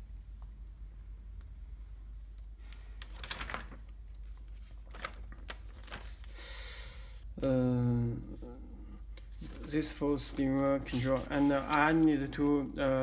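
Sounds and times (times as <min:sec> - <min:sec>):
steady low hum: 0:00.0 - 0:03.0, 0:05.9 - 0:13.0.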